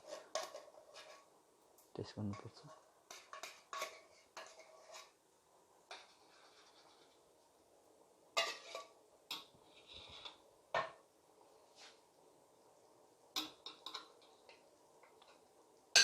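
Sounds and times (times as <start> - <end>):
metal utensil scraping a pot: 0.0 - 1.3, 2.3 - 5.2, 5.9 - 7.3, 8.4 - 10.9, 13.4 - 14.6.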